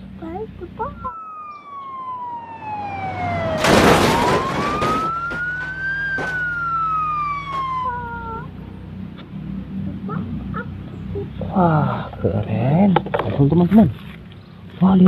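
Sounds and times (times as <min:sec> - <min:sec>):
toy ambulance siren wailing: 0:00.8 - 0:08.6.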